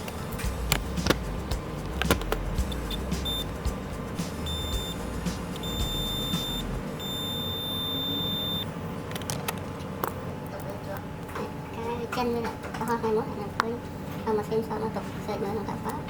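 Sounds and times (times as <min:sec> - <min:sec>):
sharp clicks: 0:00.0 - 0:03.4
background music: 0:00.0 - 0:07.4
high-pitched electronic beeps: 0:02.7 - 0:03.5, 0:04.4 - 0:08.7.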